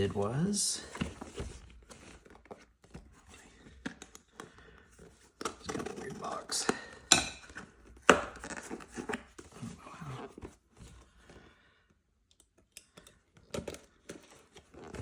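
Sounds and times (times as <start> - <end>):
cardboard rustling and scraping: 0.0 - 6.7, 7.5 - 11.5, 13.6 - 15.0.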